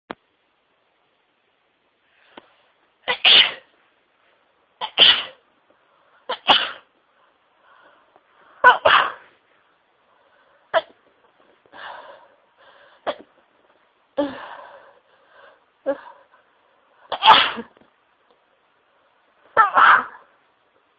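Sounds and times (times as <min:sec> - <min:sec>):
breathy noise: 0:07.0 - 0:17.2
woman sneezing: 0:08.6 - 0:09.3.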